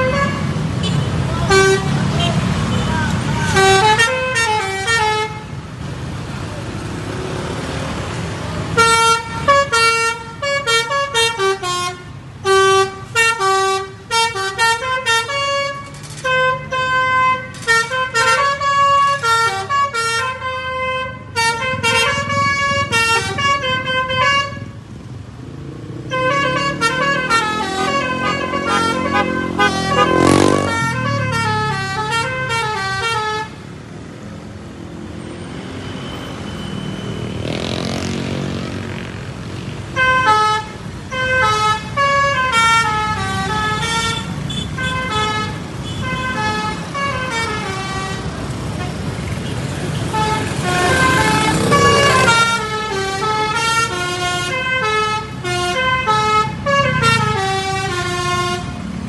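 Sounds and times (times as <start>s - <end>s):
musical bus horn melody: 0.0s - 2.4s, 3.4s - 5.6s, 8.8s - 24.8s, 26.1s - 33.6s, 40.0s - 49.0s, 50.0s - 58.8s
traffic noise: 0.0s - 59.0s.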